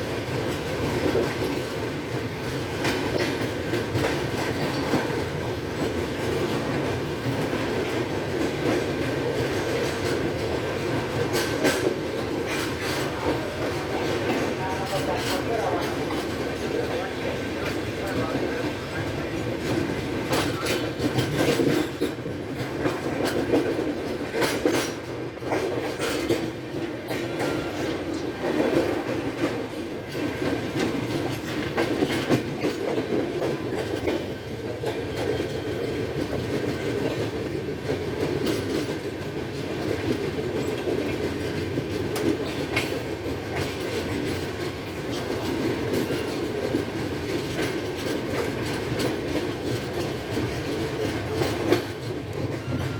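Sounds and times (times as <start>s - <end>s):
train rumbling: 0.0s - 52.9s.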